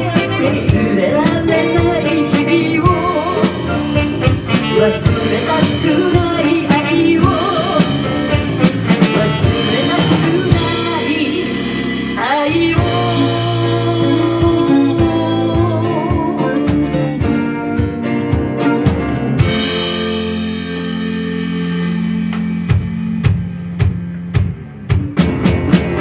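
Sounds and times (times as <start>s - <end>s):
wavering melodic lead line: 0.0s - 24.9s
bass: 0.0s - 26.0s
drum kit: 0.0s - 26.0s
keyboards: 0.0s - 26.0s.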